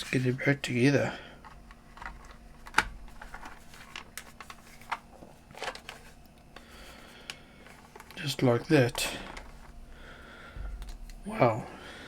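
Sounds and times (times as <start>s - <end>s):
plastic case clicks and knocks: 1.5s - 3.5s.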